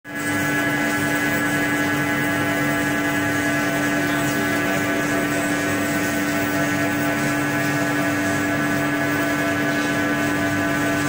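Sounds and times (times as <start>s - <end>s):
machine electrical hum: 0.1s - 11.0s.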